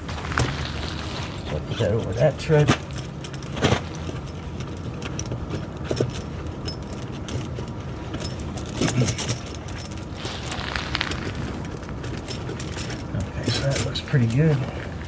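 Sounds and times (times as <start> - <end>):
chain links clinking: 0.2 - 1.5.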